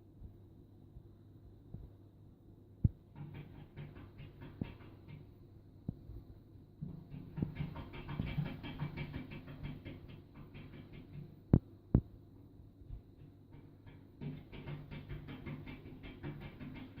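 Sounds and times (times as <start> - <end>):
loud knocks on a door: 2.8 - 6.1, 6.8 - 12.1, 12.9 - 17.0
cats scratching at a door: 3.2 - 5.3, 6.8 - 11.4, 13.5 - 17.0.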